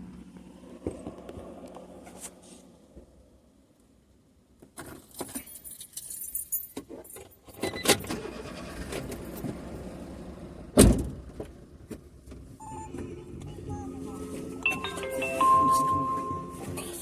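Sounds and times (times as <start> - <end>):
keys jangling: 5.1 - 7.5.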